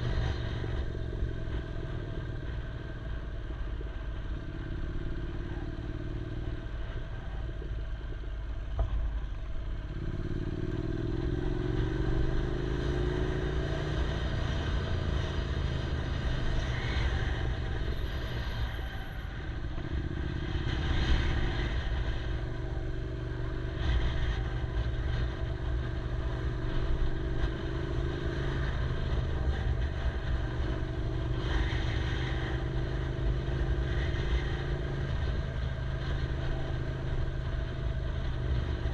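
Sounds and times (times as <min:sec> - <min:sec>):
road and wind noise: 0:00.0 - 0:38.9
motorcycle engine revving: 0:09.8 - 0:38.9.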